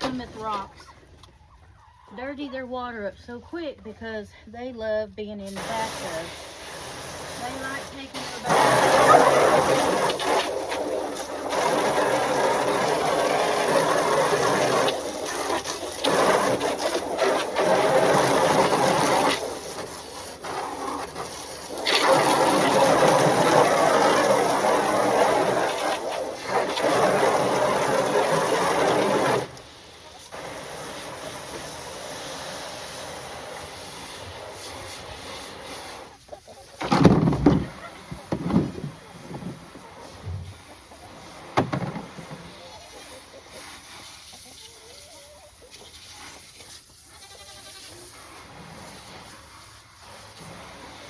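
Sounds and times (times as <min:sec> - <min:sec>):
water running from hose: 0:05.5 - 0:36.1, 0:45.7 - 0:51.0.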